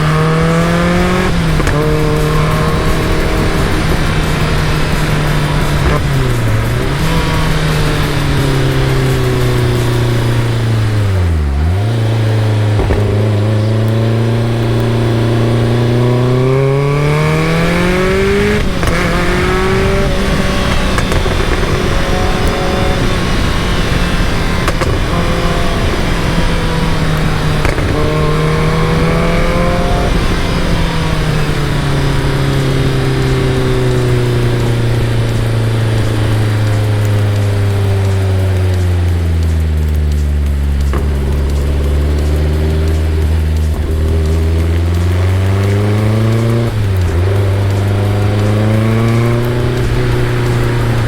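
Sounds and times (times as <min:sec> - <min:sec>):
car engine running: 0:00.0 - 0:51.0.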